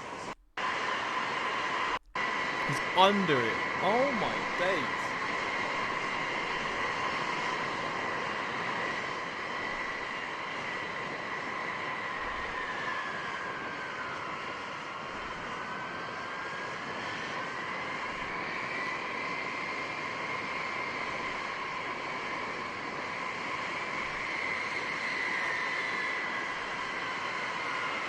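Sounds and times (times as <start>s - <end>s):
jet engines running: 0.0s - 13.2s.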